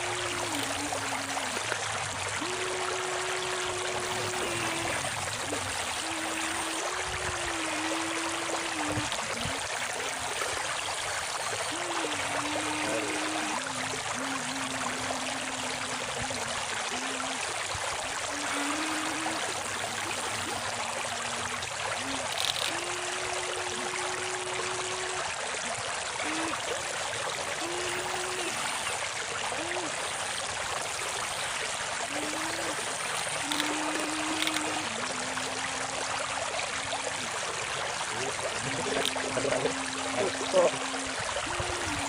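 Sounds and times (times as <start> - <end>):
shallow river water running: 0.0 - 42.0.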